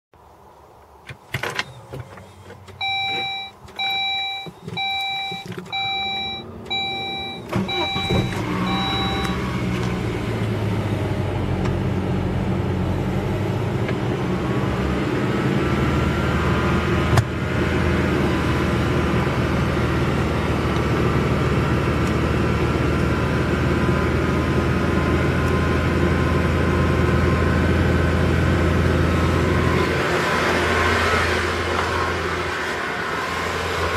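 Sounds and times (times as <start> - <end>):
car engine starting and running: 0.8 - 33.9
dashboard warning chime beeping: 2.7 - 9.7.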